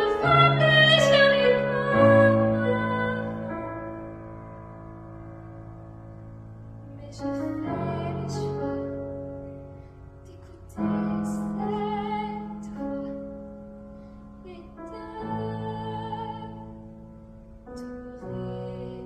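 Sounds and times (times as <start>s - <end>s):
woman singing a slow ballad: 0.0s - 3.9s, 6.9s - 9.5s, 10.2s - 13.4s, 14.4s - 16.8s, 17.8s - 19.0s
piano accompaniment: 0.0s - 19.0s.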